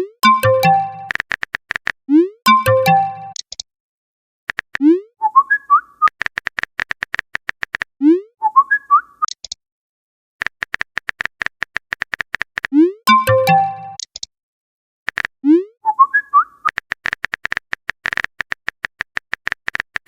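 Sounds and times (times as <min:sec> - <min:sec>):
chirpy blips: 0:00.2 - 0:01.1, 0:02.5 - 0:03.4, 0:13.1 - 0:14.0
fast run of sharp clicks: 0:01.1 - 0:02.0, 0:04.5 - 0:04.8, 0:06.1 - 0:07.9, 0:10.4 - 0:12.7, 0:15.1 - 0:15.3, 0:16.7 - 0:20.0.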